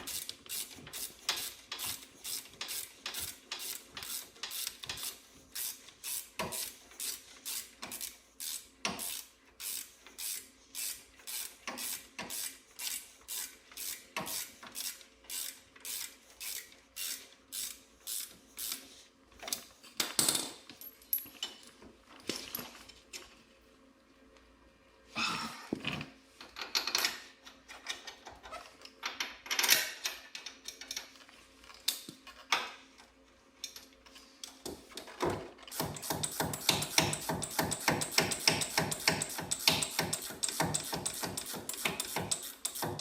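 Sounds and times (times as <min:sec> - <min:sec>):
ratchet wrench clicking: 0:00.0 - 0:18.8, 0:35.7 - 0:43.0.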